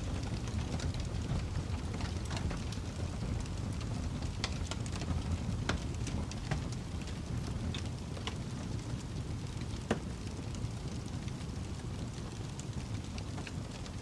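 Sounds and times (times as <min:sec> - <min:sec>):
wood fire crackling: 0:00.0 - 0:14.0.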